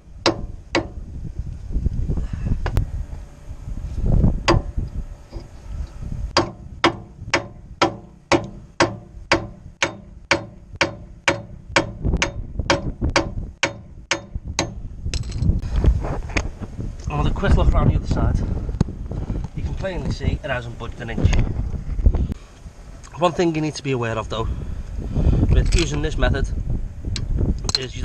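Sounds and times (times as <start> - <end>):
hammer striking steel bolt: 6.4 - 14.8.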